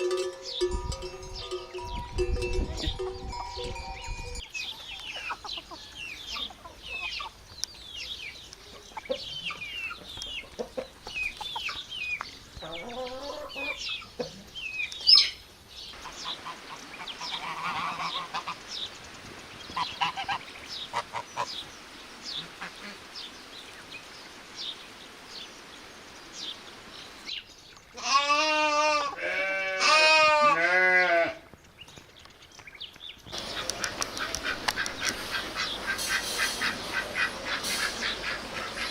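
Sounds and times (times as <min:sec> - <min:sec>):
geese honking: 0:16.0 - 0:18.7, 0:19.7 - 0:21.6, 0:33.4 - 0:38.9.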